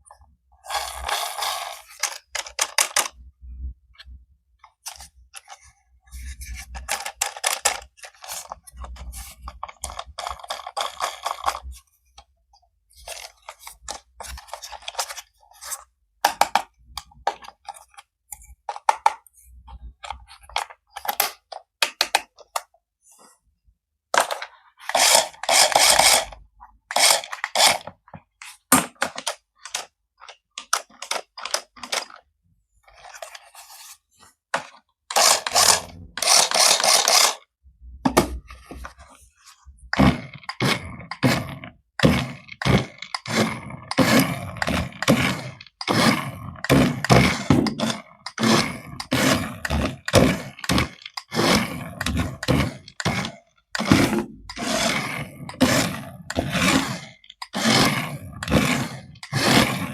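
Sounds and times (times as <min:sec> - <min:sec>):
packaging crinkling and scraping: 0:04.8 - 0:11.8, 0:32.8 - 0:37.4, 0:38.4 - 0:59.9.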